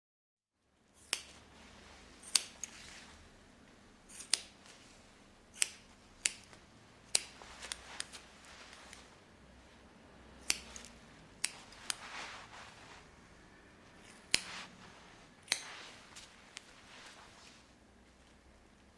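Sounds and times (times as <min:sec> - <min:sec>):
scissors snipping: 0:01.0 - 0:01.4, 0:02.2 - 0:02.8, 0:04.1 - 0:04.6, 0:05.5 - 0:08.2, 0:10.4 - 0:12.1, 0:14.0 - 0:14.6, 0:15.4 - 0:16.8.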